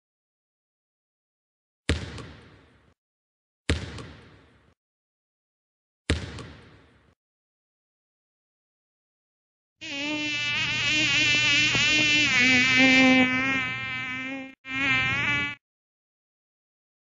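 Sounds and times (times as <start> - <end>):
buzzing insect: 9.8 - 15.6.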